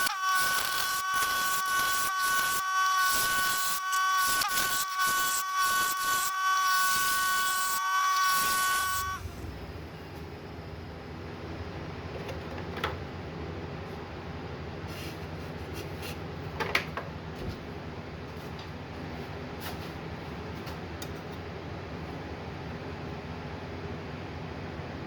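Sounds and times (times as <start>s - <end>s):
wood lathe humming: 0.0s - 9.3s.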